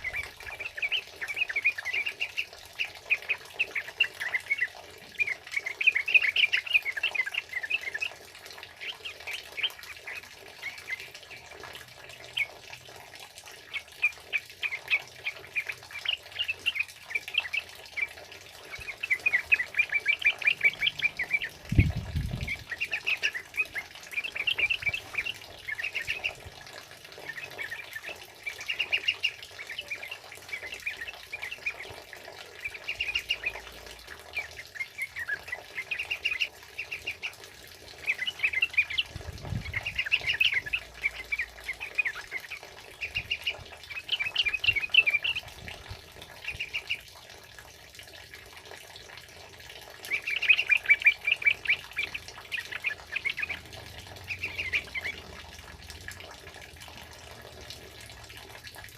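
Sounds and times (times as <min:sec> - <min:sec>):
birds chattering song: 0:00.0 - 0:47.1, 0:49.9 - 0:55.6.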